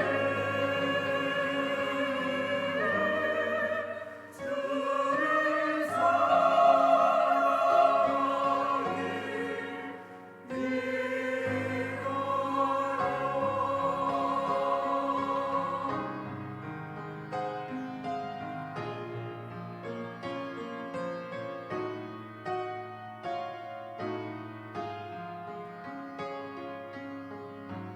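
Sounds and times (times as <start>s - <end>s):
church choir singing: 0.0s - 21.1s
piano accompaniment: 0.0s - 27.9s.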